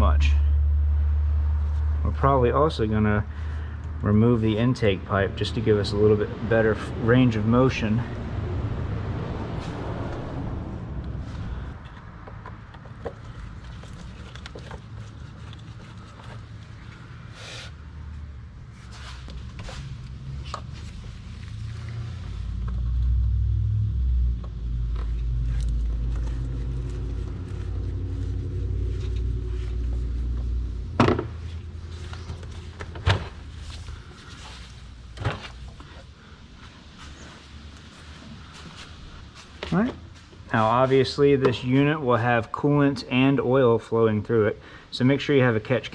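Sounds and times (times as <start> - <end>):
low rumble: 5.3 - 12.2, 19.8 - 40.4.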